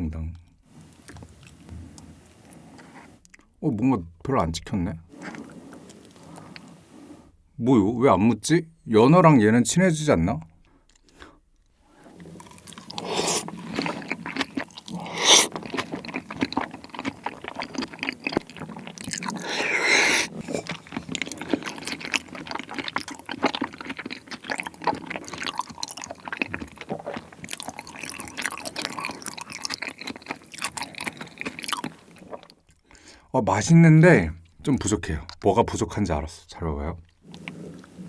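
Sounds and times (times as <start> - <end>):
chewing with wet mouth smacks: 12.0 - 32.8.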